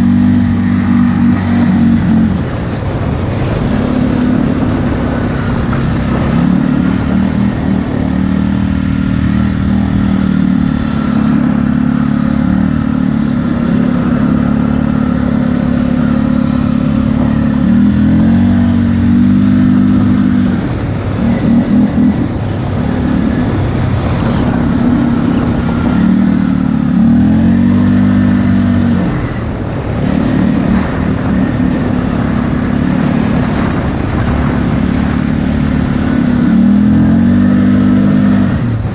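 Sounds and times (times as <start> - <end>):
atv engine revving: 0.0 - 38.9.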